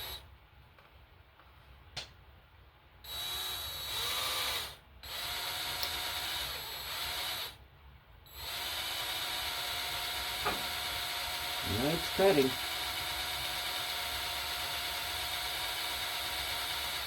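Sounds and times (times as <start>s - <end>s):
power drill cutting into bolt: 3.1s - 7.6s, 8.4s - 17.0s.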